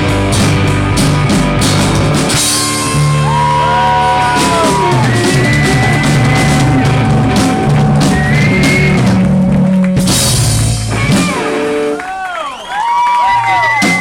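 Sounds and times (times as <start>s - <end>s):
drum kit beating: 0.0s - 12.2s, 13.2s - 14.0s
live rock band playing: 0.0s - 12.3s, 13.2s - 14.0s.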